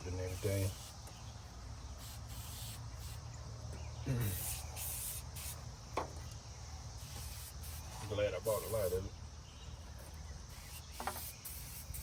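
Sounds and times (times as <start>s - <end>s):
aerosol can spraying: 2.0s - 3.2s, 4.2s - 5.6s, 7.0s - 9.0s, 10.5s - 12.0s.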